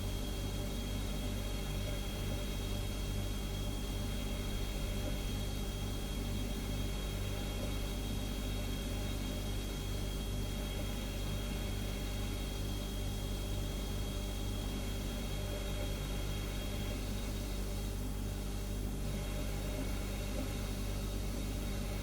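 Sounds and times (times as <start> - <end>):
refrigerator compressor hum: 0.0 - 22.0
faint high whine: 10.6 - 22.0.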